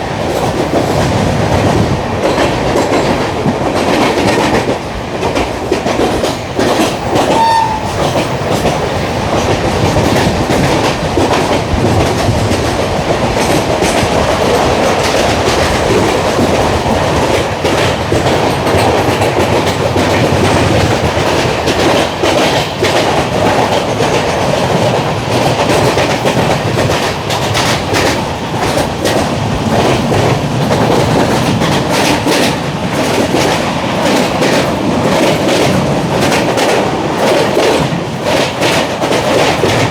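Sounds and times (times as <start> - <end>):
clickety-clack over rail joints: 0.0 - 39.9
train wheels rumbling on rails: 0.0 - 39.9
brief high tone: 7.3 - 7.9.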